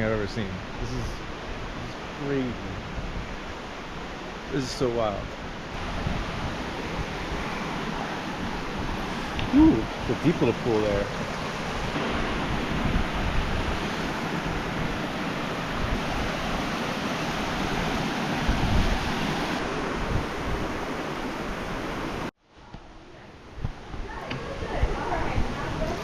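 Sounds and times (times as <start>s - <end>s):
creek water rushing: 0.0s - 22.3s, 23.4s - 26.0s.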